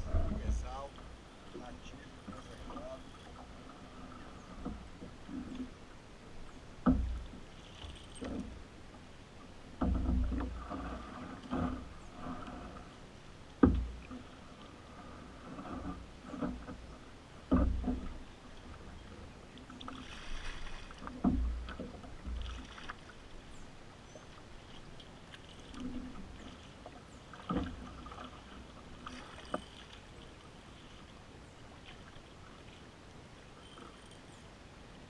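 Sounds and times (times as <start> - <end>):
paddle knocking against hull: 0.0 - 5.8, 6.8 - 8.7, 9.6 - 12.9, 13.6 - 18.9, 19.6 - 23.4, 24.7 - 31.1
paddle strokes splashing: 0.0 - 34.7.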